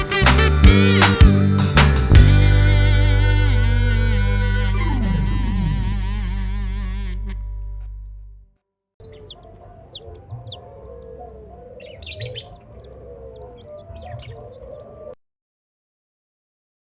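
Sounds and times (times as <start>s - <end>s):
background music: 0.0s - 5.7s
baby chicks peeping: 9.0s - 15.2s.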